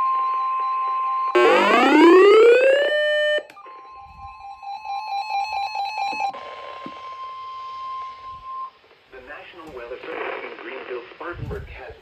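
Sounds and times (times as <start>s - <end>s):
fast pulsing beep: 1.4s - 3.4s
steady high alert tone: 1.4s - 3.5s
electronic siren winding up: 1.4s - 3.6s.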